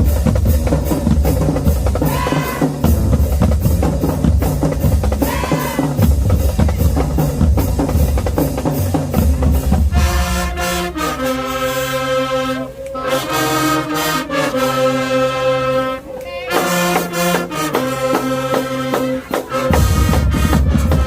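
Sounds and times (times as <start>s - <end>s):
bass drums: 0.0s - 11.0s, 19.6s - 21.0s
brass section playing chords: 9.1s - 21.0s.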